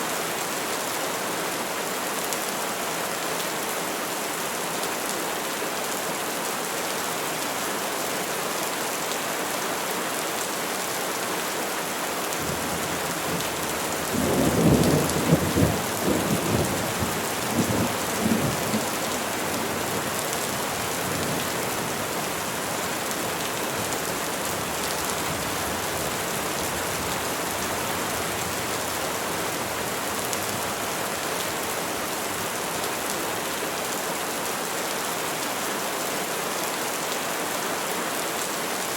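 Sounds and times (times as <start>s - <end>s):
rain falling on trees: 0.0s - 38.9s.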